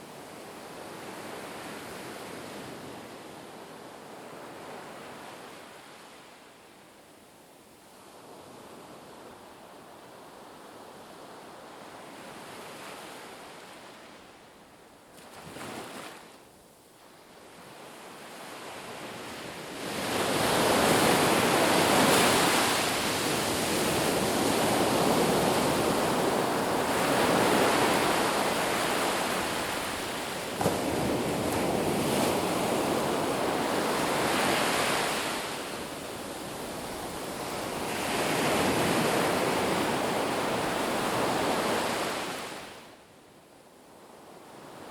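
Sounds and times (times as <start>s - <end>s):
sea waves washing onto shore: 18.5s - 42.8s.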